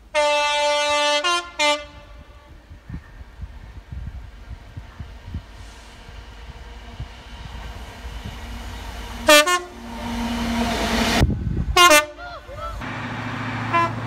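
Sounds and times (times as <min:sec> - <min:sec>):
train rumble: 0:00.0 - 0:14.0
train horn blast: 0:00.1 - 0:02.6, 0:09.0 - 0:12.2, 0:13.6 - 0:14.0.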